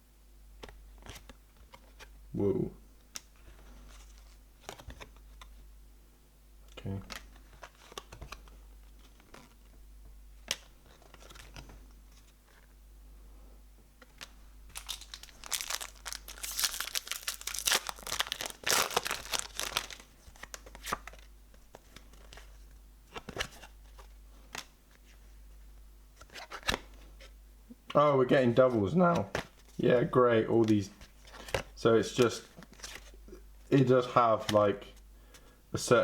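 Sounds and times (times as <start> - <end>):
wrapper crinkling: 14.2 - 21.2.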